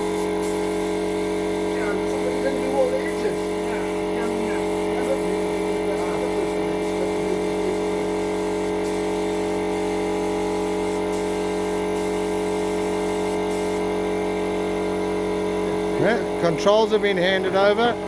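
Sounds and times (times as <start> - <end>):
spray gun air hissing: 0.0 - 14.2
compressor humming: 0.0 - 18.0.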